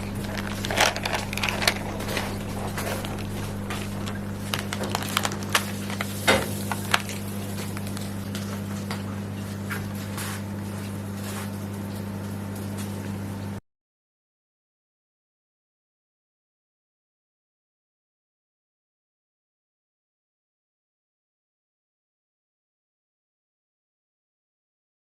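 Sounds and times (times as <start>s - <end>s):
crackles and pops: 0.0s - 9.0s
microwave oven humming: 0.0s - 13.6s.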